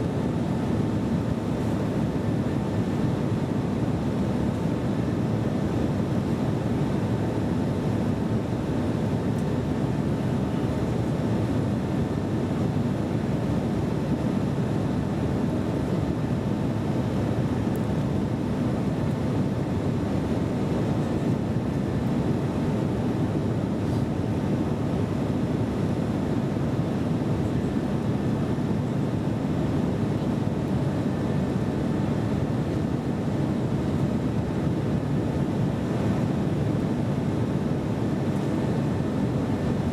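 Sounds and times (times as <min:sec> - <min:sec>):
jet engines and airflow rush: 0:00.0 - 0:39.9.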